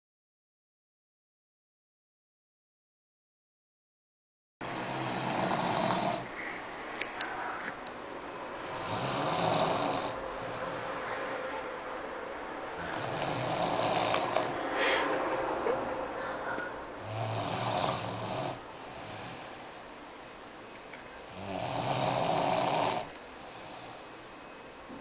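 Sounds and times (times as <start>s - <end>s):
person snoring: 4.6s - 6.3s, 8.6s - 11.1s, 12.7s - 15.1s, 17.0s - 19.6s, 21.3s - 24.1s
quiet breathing: 5.0s - 7.7s, 8.5s - 11.7s, 12.7s - 15.5s, 16.1s - 19.9s, 21.3s - 24.7s.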